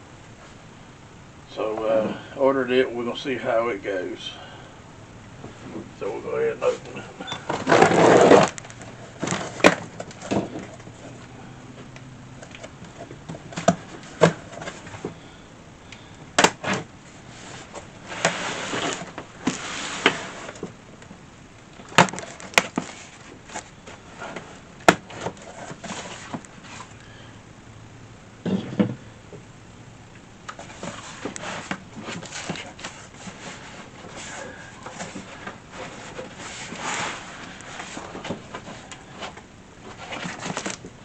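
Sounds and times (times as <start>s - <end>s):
cardboard rustling: 5.4s - 21.0s, 21.8s - 27.1s, 30.5s - 41.0s
cardboard box knocks and snaps: 16.4s - 16.9s.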